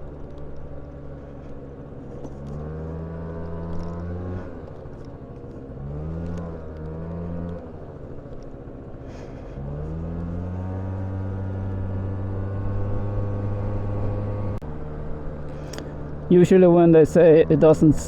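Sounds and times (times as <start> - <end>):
car engine accelerating: 0.0 - 18.0.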